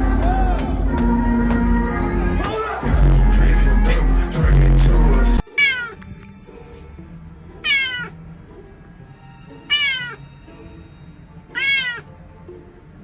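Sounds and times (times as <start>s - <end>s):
faint background music: 0.0s - 13.0s
cat meowing: 5.4s - 6.0s, 7.6s - 8.2s, 9.7s - 10.2s, 11.5s - 12.1s.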